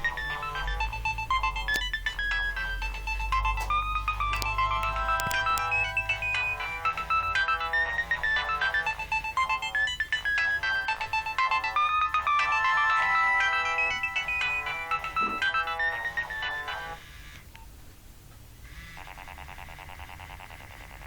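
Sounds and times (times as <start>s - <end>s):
electronic ringtone melody: 0.0s - 17.4s
pulsing ringtone: 0.0s - 17.4s, 18.8s - 21.0s.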